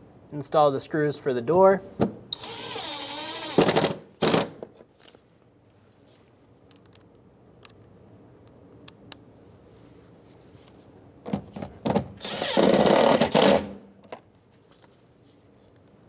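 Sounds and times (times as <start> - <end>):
power screwdriver running: 2.4 - 4.5, 12.2 - 13.7.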